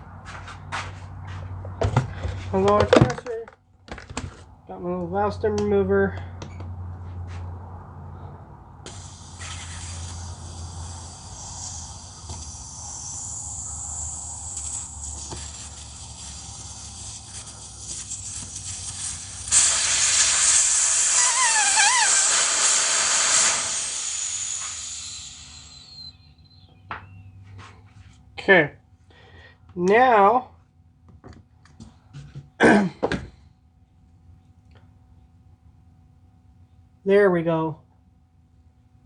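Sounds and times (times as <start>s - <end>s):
air hissing from tire valve: 8.8s - 26.6s
warbling whistle: 21.1s - 27.2s.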